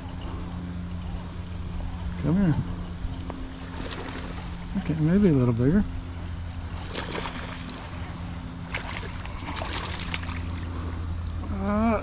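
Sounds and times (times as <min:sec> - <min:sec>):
steady low hum: 0:00.0 - 0:12.0
fish splashing in water: 0:03.6 - 0:05.0, 0:06.6 - 0:10.7.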